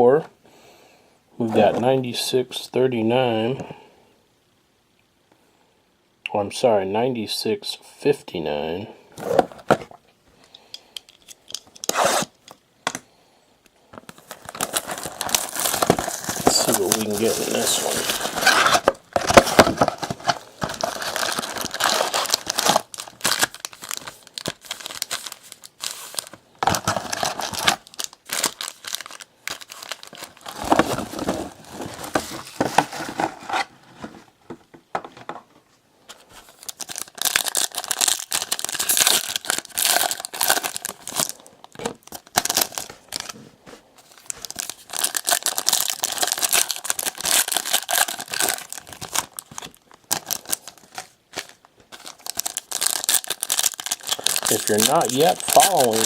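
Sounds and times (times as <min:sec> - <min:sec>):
wrappers tearing and crinkling: 0:11.8 - 0:12.4, 0:14.1 - 0:33.2, 0:36.2 - 0:43.4, 0:44.0 - 0:56.0.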